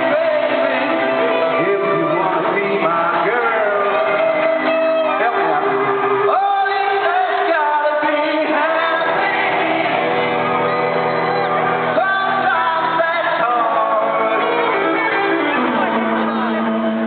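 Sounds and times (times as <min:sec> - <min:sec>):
person singing: 0:00.0 - 0:10.8, 0:11.8 - 0:17.0
crowd shouting along: 0:00.0 - 0:17.0
pop-rock band playing: 0:00.0 - 0:17.0.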